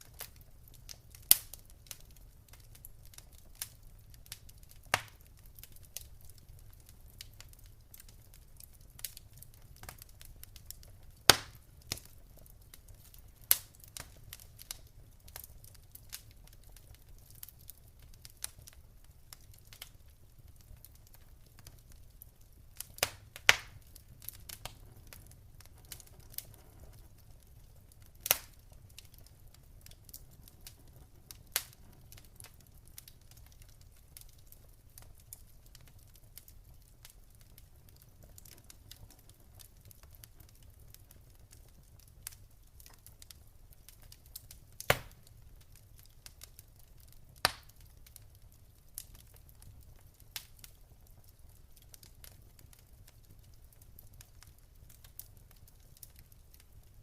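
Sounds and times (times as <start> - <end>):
wood fire crackling: 0.0 - 57.0.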